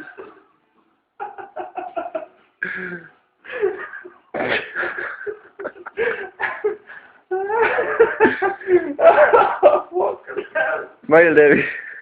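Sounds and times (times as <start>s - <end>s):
person laughing and coughing: 3.6s - 6.8s, 7.5s - 11.0s.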